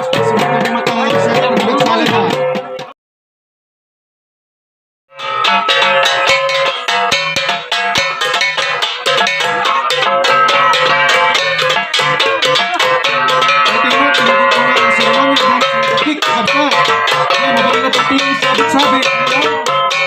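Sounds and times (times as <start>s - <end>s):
gong ensemble playing: 5.2s - 20.0s.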